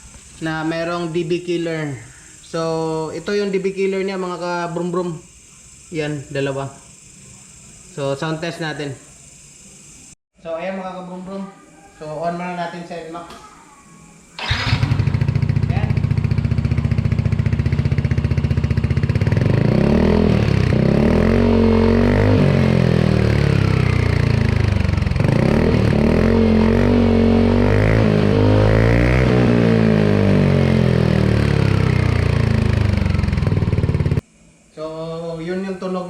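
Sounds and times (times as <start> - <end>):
scooter engine revving: 14.4 - 34.2.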